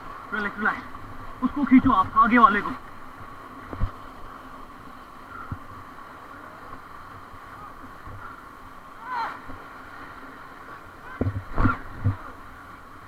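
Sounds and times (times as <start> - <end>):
river water rushing: 0.0 - 13.0
wind on microphone: 3.6 - 4.0, 11.0 - 12.4.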